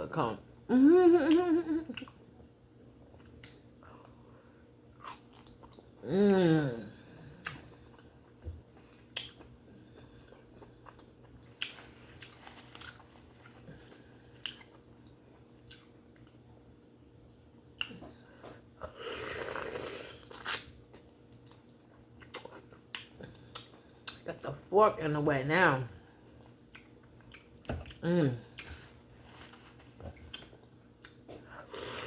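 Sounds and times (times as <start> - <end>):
wet chewing mouth sounds: 7.4 - 16.4, 20.2 - 24.2, 26.6 - 29.0.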